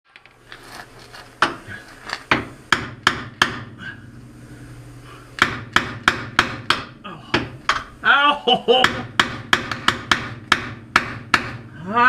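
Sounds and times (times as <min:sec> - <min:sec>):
hammer striking chisel on metal: 0:02.3 - 0:03.7, 0:05.4 - 0:07.9, 0:08.8 - 0:11.7.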